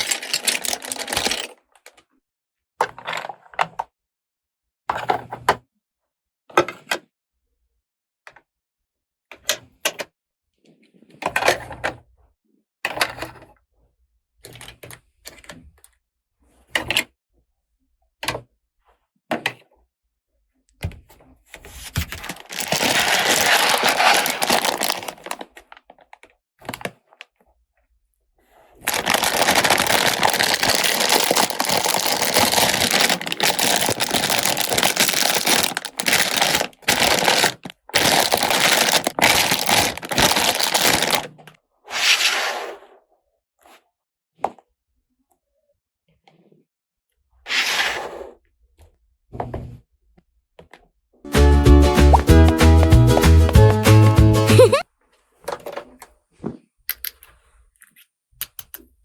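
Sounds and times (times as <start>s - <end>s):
packaging rustling: 0.0s - 1.5s, 21.7s - 25.5s, 28.8s - 41.3s
plastic toy pieces clicking: 0.0s - 1.5s, 22.2s - 25.4s, 28.9s - 41.3s.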